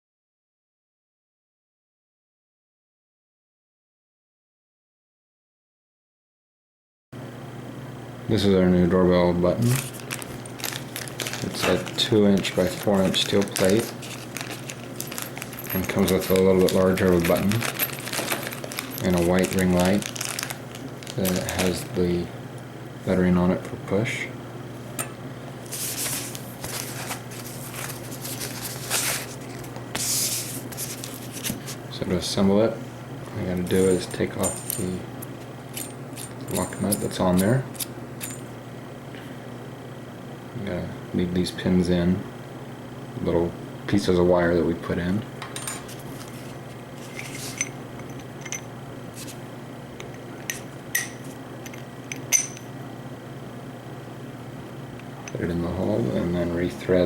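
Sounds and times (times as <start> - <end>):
low electrical hum: 7.2 - 57.0
rustling and scraping: 9.6 - 22.0, 25.6 - 31.9, 45.6 - 49.4
metal parts clinking: 9.8 - 21.9, 33.7 - 35.0, 35.7 - 38.5, 45.6 - 49.3, 50.5 - 52.7.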